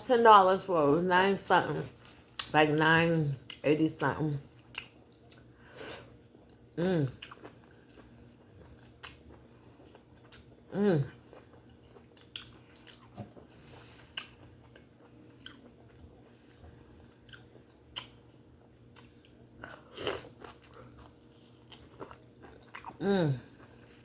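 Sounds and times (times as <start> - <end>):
wet chewing smacks and clicks: 11.3 - 13.4, 14.1 - 16.2, 20.3 - 23.0.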